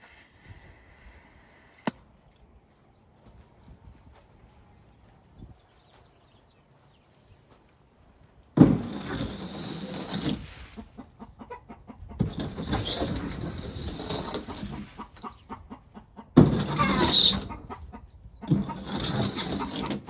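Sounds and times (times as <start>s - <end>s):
rake scraping through bedding: 8.6s - 11.0s, 12.2s - 15.4s, 16.4s - 17.7s, 18.5s - 20.0s
hens clucking: 10.6s - 20.0s.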